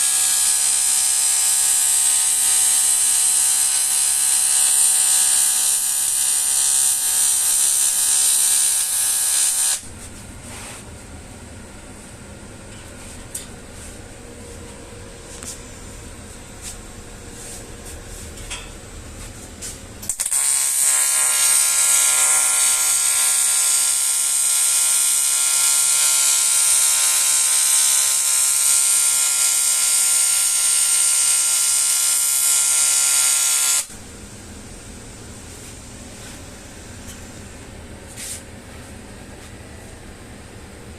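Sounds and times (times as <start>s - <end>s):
welding arc buzzing with hiss: 0.0s - 10.2s, 15.3s - 38.5s.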